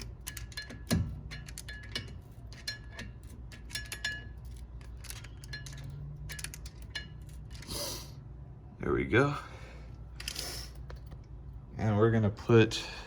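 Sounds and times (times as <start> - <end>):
screwdriver clinking on metal: 0.0 - 7.7.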